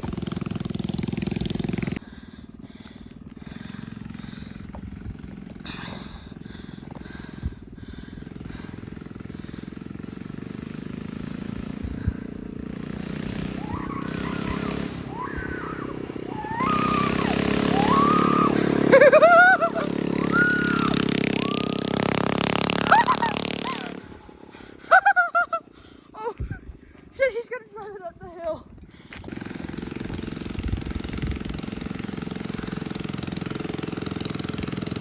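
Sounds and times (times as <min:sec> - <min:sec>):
mini bike engine: 0:00.0 - 0:27.5, 0:28.4 - 0:35.0
short high rising-and-falling calls: 0:13.5 - 0:22.0.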